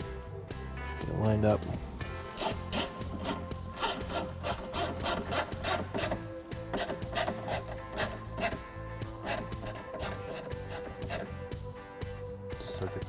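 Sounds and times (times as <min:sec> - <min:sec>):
background music: 0:00.0 - 0:13.0
ratchet clicking: 0:02.4 - 0:08.6, 0:09.2 - 0:11.3.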